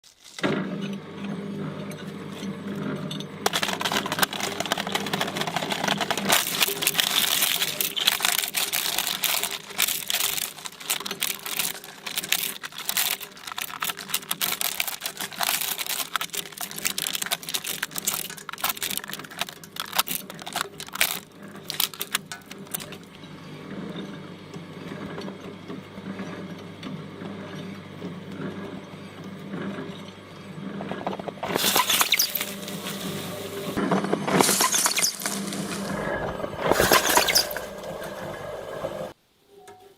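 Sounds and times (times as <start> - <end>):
electric shredder motor hum: 0.4 - 23.2, 31.4 - 39.2
shredder crackling and clicking: 2.8 - 23.2, 31.0 - 39.2.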